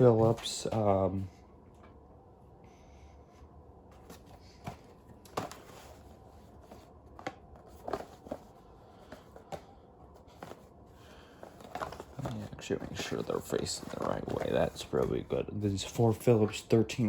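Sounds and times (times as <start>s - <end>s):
faint steady hum: 0.0s - 17.0s
cardboard boxes tapping and rustling: 4.0s - 9.7s, 11.4s - 15.2s.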